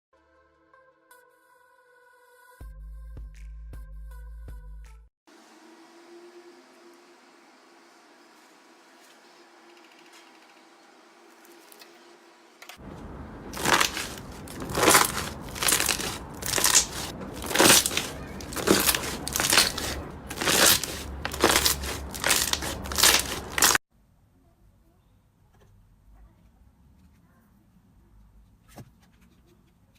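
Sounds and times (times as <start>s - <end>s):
slime crackling when squeezed: 13.5s - 23.8s.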